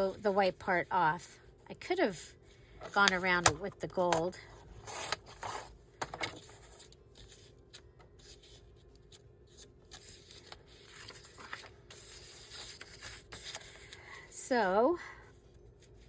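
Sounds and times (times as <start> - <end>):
paper rustling: 4.7 - 14.0.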